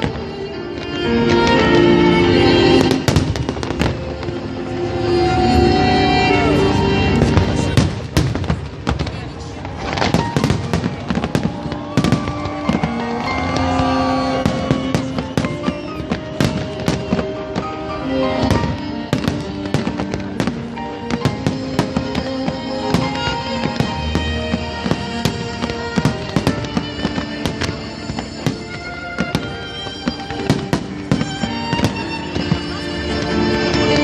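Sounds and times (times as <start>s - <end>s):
fireworks banging: 0.0s - 34.0s
loud music with held notes: 12.0s - 34.0s.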